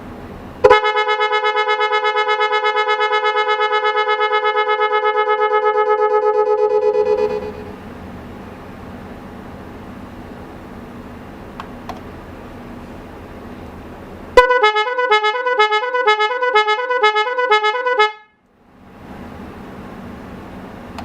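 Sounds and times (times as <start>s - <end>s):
steady low hum: 0.0s - 17.6s
car horn two-tone warble: 0.6s - 7.8s, 14.4s - 18.4s.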